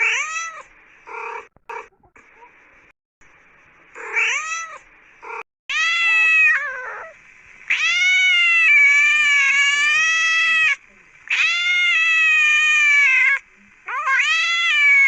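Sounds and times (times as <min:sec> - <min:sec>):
cat meowing: 0:00.0 - 0:00.7, 0:04.0 - 0:04.8, 0:05.7 - 0:15.0.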